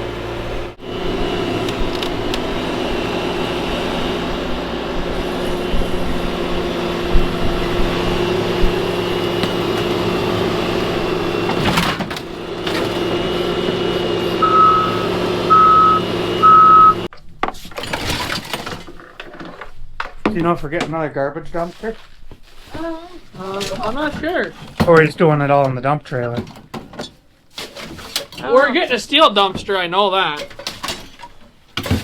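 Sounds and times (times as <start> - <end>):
heavy vehicle engine running: 0.0 - 17.1
reversing alarm beeps: 14.4 - 17.1.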